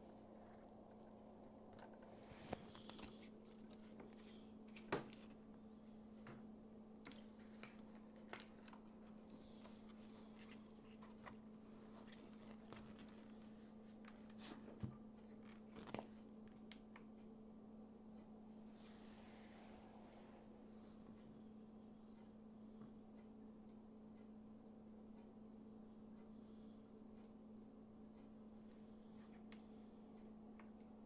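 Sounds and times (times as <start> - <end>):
low electrical hum: 0.0 - 31.0.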